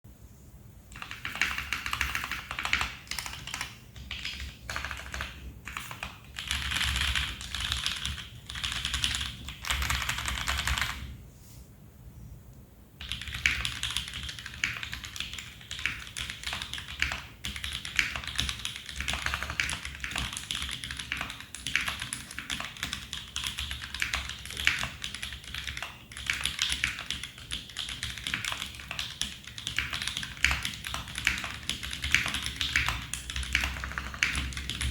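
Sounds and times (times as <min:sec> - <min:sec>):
mechanical keyboard typing: 0:00.9 - 0:11.1, 0:13.0 - 0:34.9.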